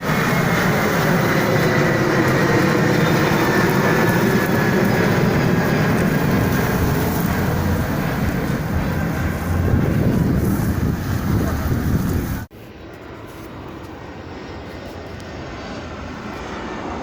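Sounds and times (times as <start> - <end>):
faint high engine whine: 0.0 - 17.0
jet airliner passing: 0.0 - 17.0.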